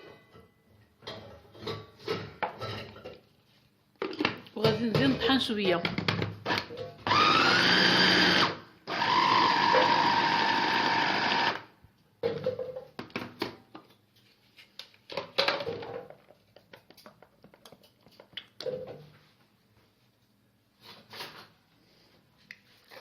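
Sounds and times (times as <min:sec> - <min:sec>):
kitchen grinder motor running: 0:06.5 - 0:11.6.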